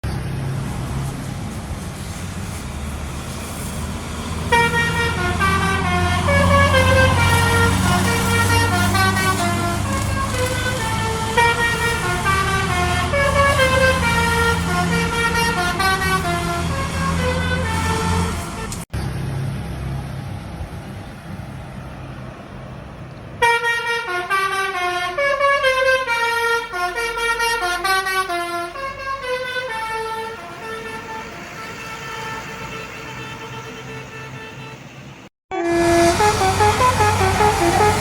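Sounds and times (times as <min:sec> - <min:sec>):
musical bus horn melody: 0:04.4 - 0:18.8, 0:23.4 - 0:38.0.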